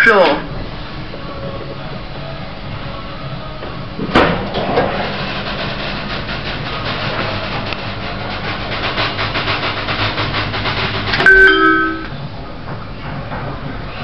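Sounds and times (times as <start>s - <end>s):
pump unit humming and pulsing: 0.0s - 14.0s
short electronic chime: 11.2s - 12.1s.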